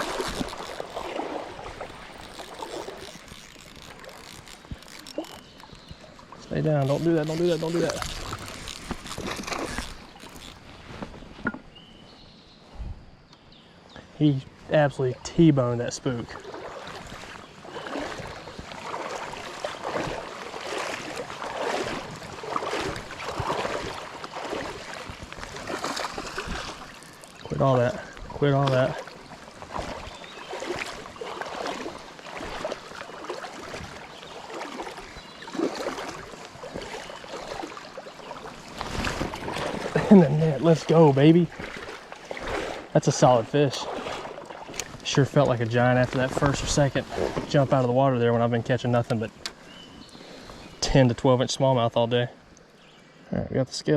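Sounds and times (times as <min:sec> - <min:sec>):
water splashing and sloshing: 0:00.0 - 0:12.2, 0:14.0 - 0:53.2
small clicks: 0:01.8 - 0:05.8.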